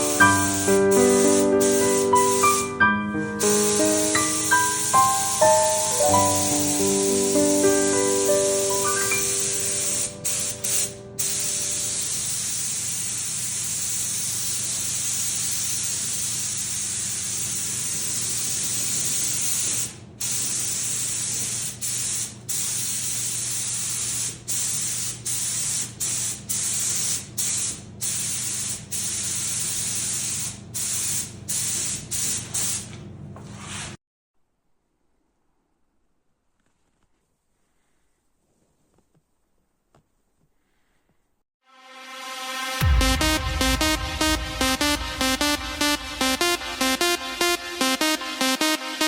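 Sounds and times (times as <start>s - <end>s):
paint spray gun hissing: 0.0s - 32.9s, 42.8s - 49.0s.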